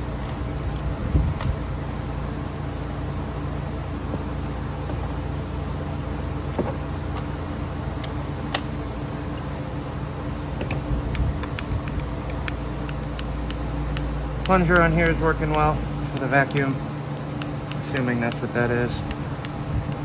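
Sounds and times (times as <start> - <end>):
steady low hum: 0.0 - 20.0
metallic clicks of small parts: 10.6 - 20.0.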